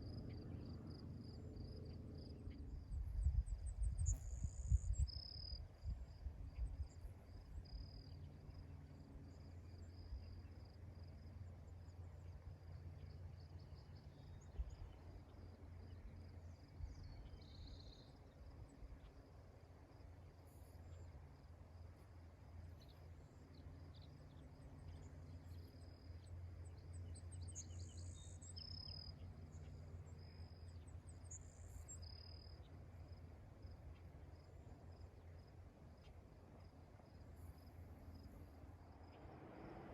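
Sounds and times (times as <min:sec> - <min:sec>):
crickets chirping: 0:00.0 - 0:39.9
low rumble: 0:38.7 - 0:39.9.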